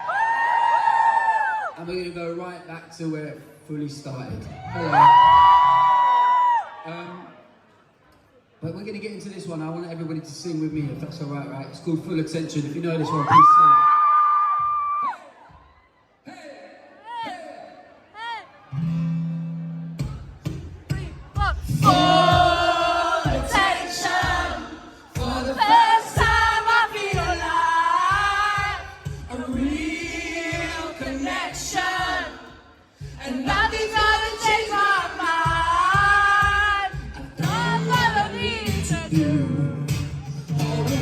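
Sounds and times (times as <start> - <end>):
person singing: 20.9 - 32.4, 33.1 - 41.0
crowd singing along: 21.4 - 41.0
strummed acoustic guitar: 36.4 - 41.0.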